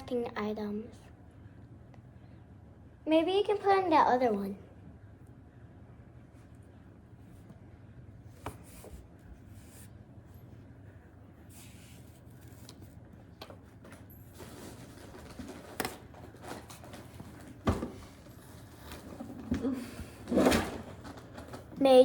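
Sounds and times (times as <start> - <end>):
craft supplies rustling: 11.4 - 19.6.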